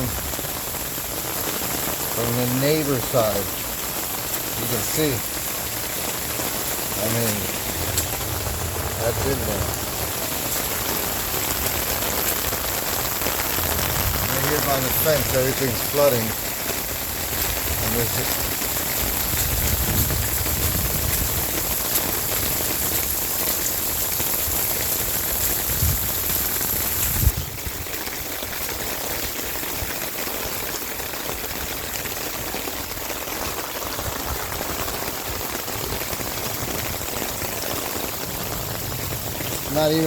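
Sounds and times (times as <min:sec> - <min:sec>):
steady rain: 0:00.0 - 0:40.0.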